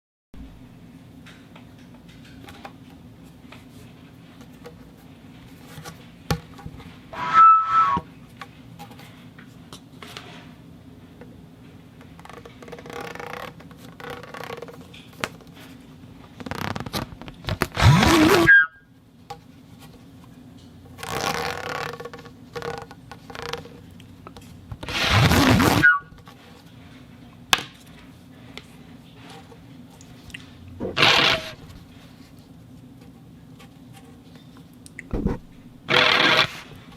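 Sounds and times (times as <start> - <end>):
steady low hum: 15.4 - 36.9.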